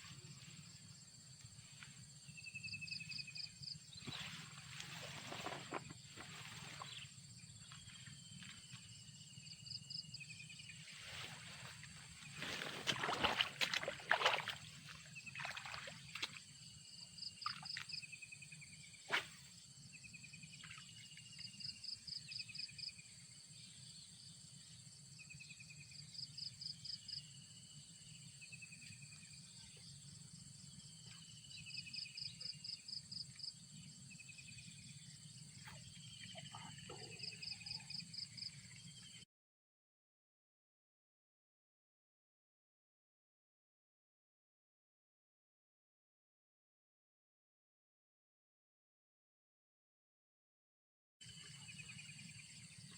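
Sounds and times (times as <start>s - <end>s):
water splashing: 12.4s - 16.4s.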